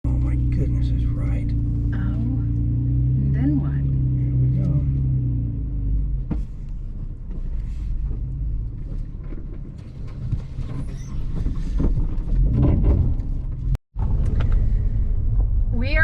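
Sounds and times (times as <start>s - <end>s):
vehicle driving rumble: 0.0s - 16.0s
knocks and rattles: 8.1s - 14.6s.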